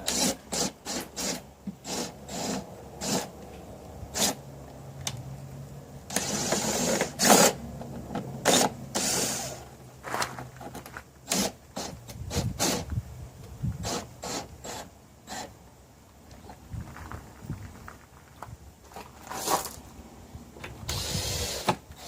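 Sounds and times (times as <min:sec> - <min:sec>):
rushing rustle: 0:16.5 - 0:21.7.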